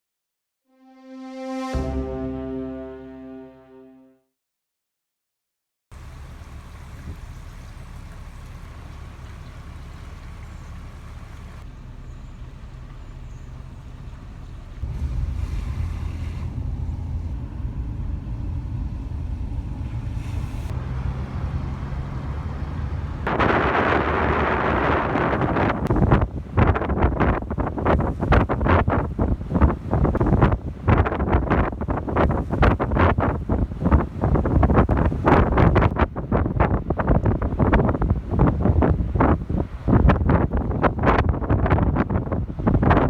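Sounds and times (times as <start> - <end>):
wind rumbling on microphone: 14.8 - 43.0
hiss of rough water: 15.0 - 16.6.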